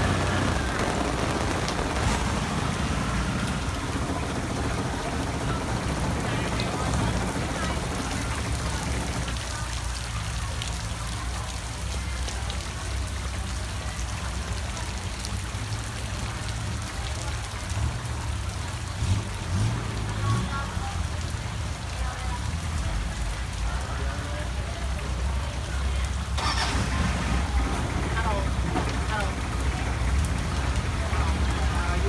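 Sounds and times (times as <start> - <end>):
low rumble: 0.0 - 9.5
raindrop ticks: 0.0 - 32.0
steady rain falling: 0.0 - 32.0.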